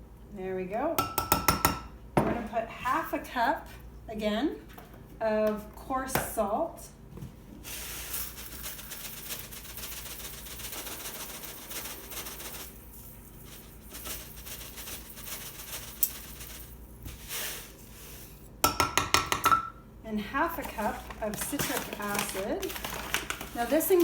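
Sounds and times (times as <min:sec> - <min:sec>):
salt pouring into a jar: 0:07.7 - 0:18.4.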